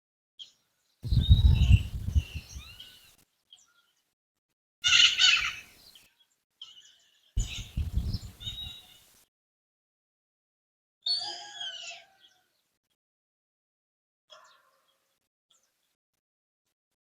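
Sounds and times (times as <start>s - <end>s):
birds chirping and singing: 1.0s - 2.8s, 4.9s - 5.7s, 7.4s - 8.8s
low rumble: 1.1s - 2.7s.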